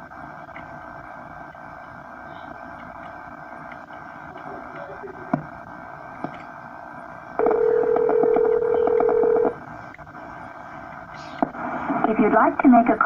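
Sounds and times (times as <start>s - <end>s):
steady telephone tone: 7.4s - 9.6s
telephone line hiss: 7.4s - 9.6s.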